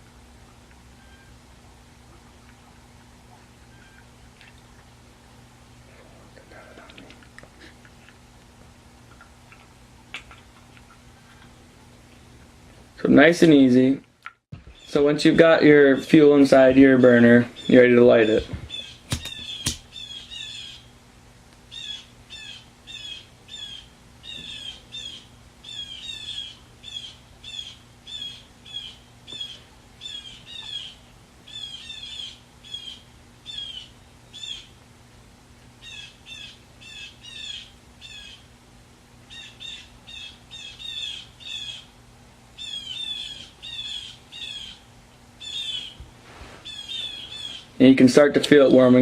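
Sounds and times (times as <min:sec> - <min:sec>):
faint low hum: 0:00.0 - 0:49.0
bird high chirps: 0:17.0 - 0:20.9, 0:21.7 - 0:34.7, 0:39.3 - 0:41.9, 0:42.6 - 0:44.8, 0:45.4 - 0:46.0, 0:46.6 - 0:47.7.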